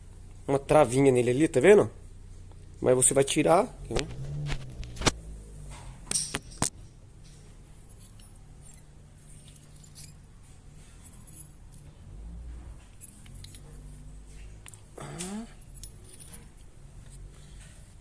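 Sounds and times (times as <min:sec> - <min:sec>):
small metal parts clinking: 0:06.0 - 0:12.0, 0:12.8 - 0:14.9, 0:15.5 - 0:17.2.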